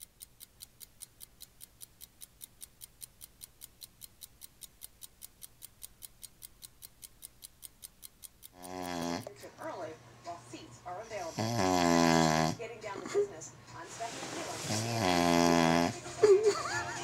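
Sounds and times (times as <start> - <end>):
rapid even ticking: 0.0 - 9.4.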